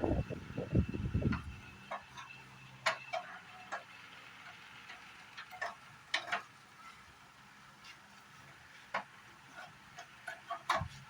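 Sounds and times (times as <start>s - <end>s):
low rumbling noise: 0.0s - 1.7s.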